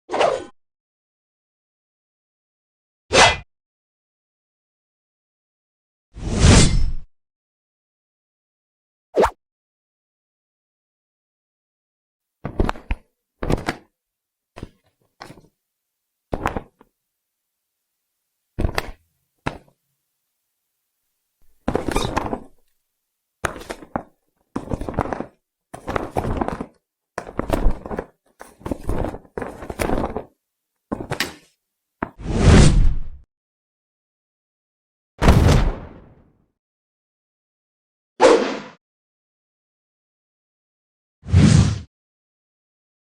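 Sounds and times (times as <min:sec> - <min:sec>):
weapon swish and thud effects: 0:03.1 - 0:03.4, 0:06.2 - 0:07.1, 0:32.1 - 0:33.2, 0:38.2 - 0:38.8, 0:41.2 - 0:41.9.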